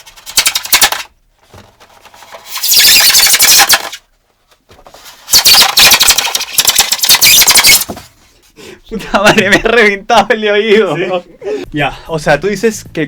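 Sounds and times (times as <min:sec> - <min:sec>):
harsh rasping screeching: 0:02.4 - 0:04.0, 0:05.3 - 0:07.9.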